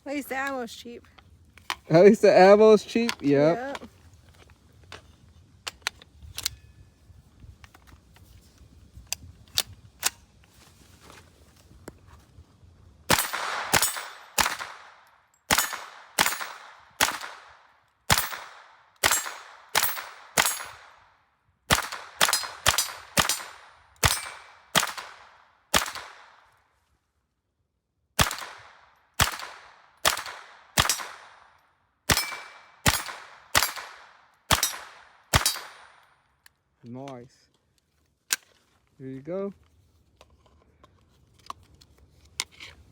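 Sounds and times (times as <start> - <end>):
sharp gunshots: 13.1 - 21.0, 21.7 - 26.4, 28.2 - 31.5, 32.1 - 36.0.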